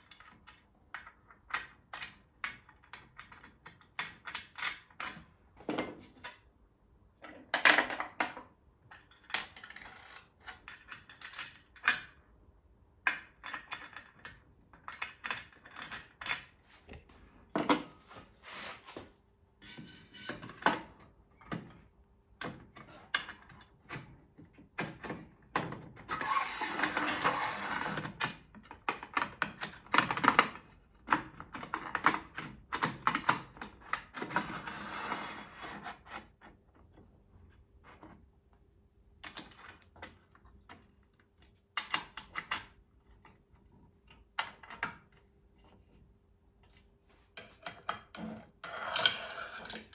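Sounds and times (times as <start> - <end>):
rubbing and scraping: 18.0 - 20.4
table saw parts clicking and rattling: 47.4 - 49.9.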